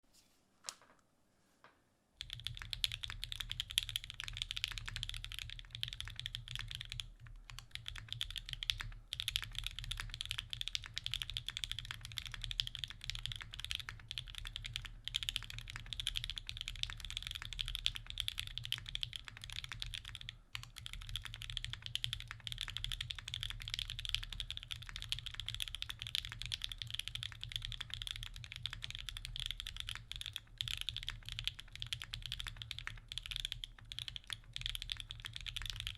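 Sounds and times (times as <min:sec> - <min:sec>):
fast mechanical keyboard typing: 0:02.2 - 0:35.9.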